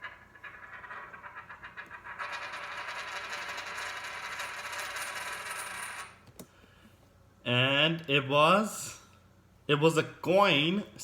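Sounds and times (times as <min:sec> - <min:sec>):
coin spinning on a tabletop: 0:00.0 - 0:06.2.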